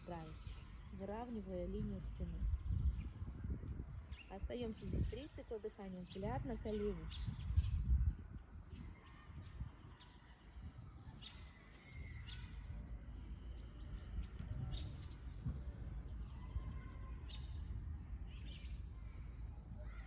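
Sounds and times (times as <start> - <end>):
birds chirping and calling: 6.0 - 17.7.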